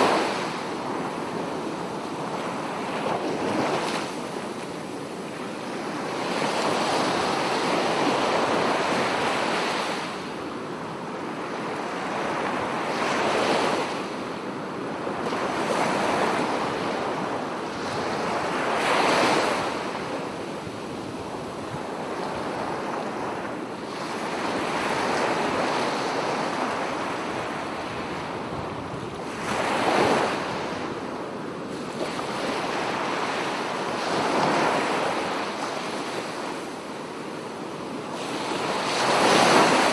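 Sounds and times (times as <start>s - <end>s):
ocean waves breaking: 37.6s - 39.9s.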